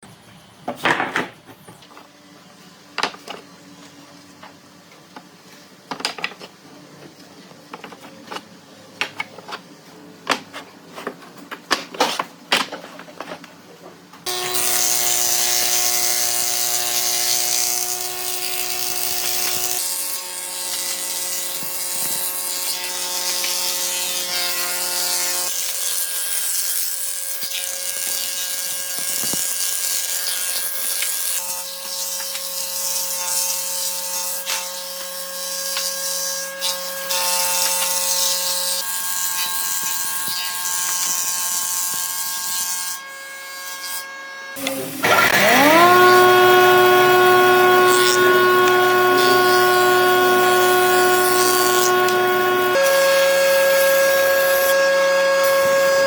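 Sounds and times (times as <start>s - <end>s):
electric power tool running: 14.3s - 19.9s, 44.5s - 56.0s.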